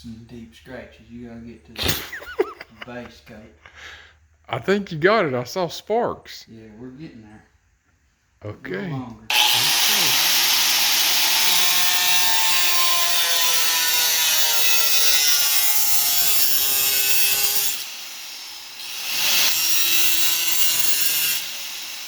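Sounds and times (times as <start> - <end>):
angle grinder cutting metal: 9.3 - 22.0.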